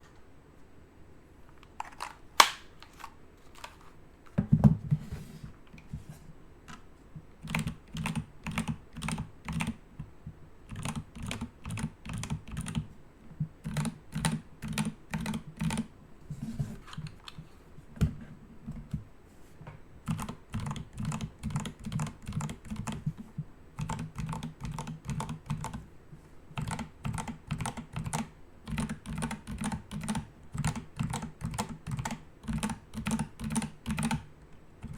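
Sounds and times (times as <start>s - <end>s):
keyboard typing: 6.7s - 10.1s, 10.7s - 12.9s, 13.6s - 15.9s, 20.0s - 25.8s, 26.5s - 34.9s.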